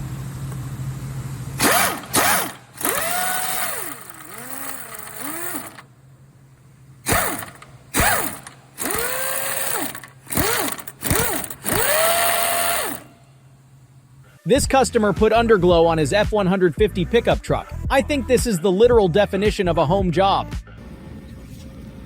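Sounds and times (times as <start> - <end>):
power tool bursts: 1.6 - 5.9, 7.0 - 13.3.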